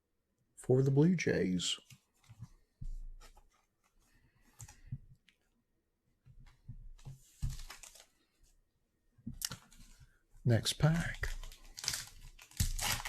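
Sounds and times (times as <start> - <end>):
cards rustling: 7.0 - 8.3, 10.8 - 13.0.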